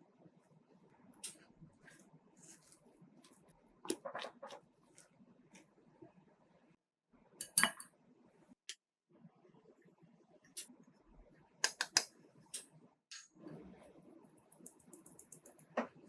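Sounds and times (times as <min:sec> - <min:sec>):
utensils clinking on kitchenware: 0:07.4 - 0:07.8.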